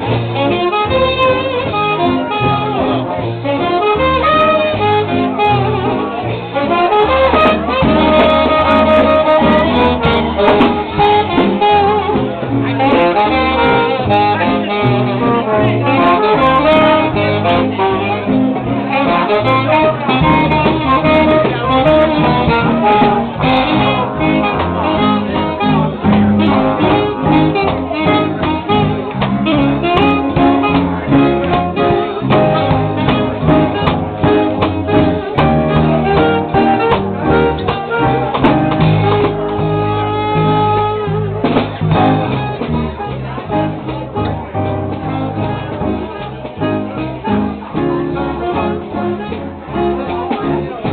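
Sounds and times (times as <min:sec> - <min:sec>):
live band playing: 0:00.0 - 0:50.9.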